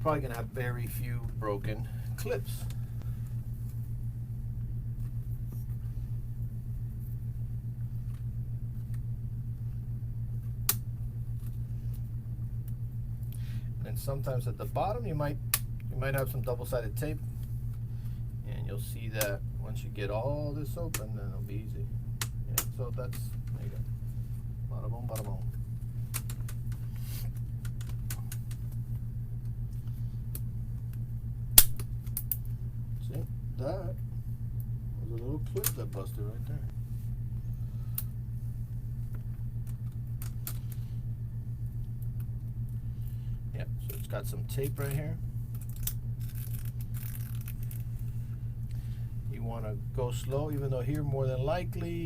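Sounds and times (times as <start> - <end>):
steady low hum: 0.0 - 52.0
sharp plastic clip snap: 31.6 - 32.3.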